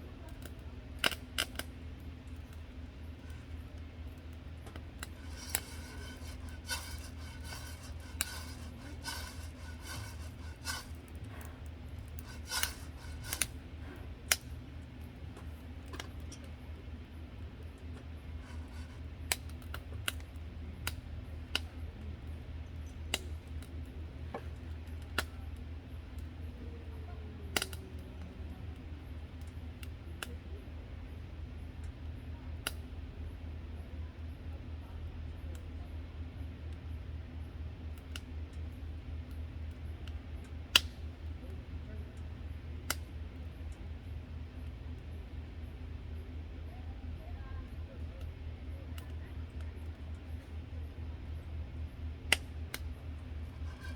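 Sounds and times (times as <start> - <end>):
steady low hum: 1.8 - 23.9, 31.3 - 53.9
metal utensils clinking: 5.2 - 11.0.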